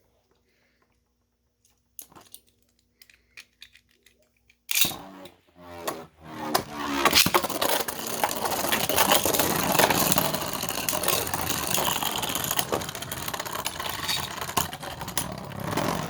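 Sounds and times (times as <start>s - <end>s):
spinning tops whirring: 4.7s - 16.0s.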